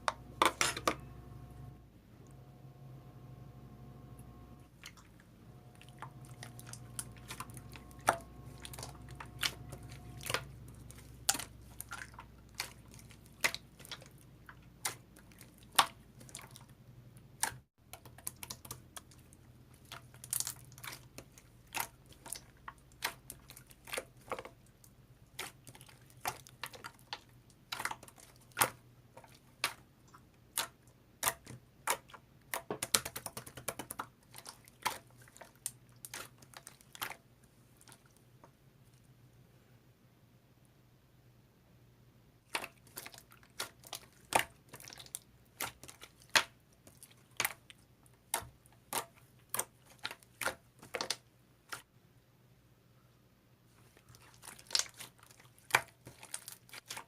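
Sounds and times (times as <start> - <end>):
hard candy crunching: 5.8 - 16.7, 17.3 - 37.2, 42.5 - 51.9, 53.8 - 57.0.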